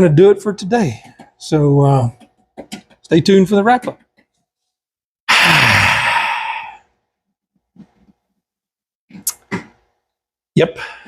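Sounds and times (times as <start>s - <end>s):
man sighing heavily: 5.3s - 6.9s.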